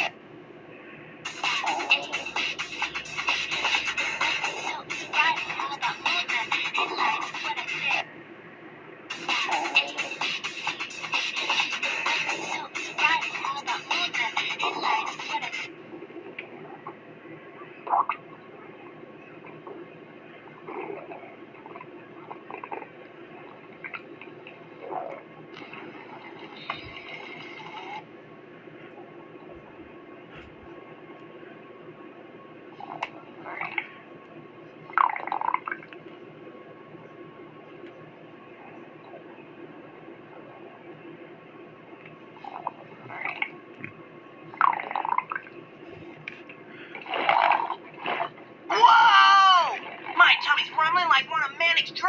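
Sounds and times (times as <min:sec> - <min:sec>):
cartoon stomach rumble gurgles: 0:14.2 - 0:17.1, 0:17.8 - 0:28.0, 0:32.8 - 0:34.0, 0:34.9 - 0:36.0, 0:42.4 - 0:45.5, 0:47.0 - 0:48.4
cartoon stomach rumbling: 0:20.6 - 0:23.0.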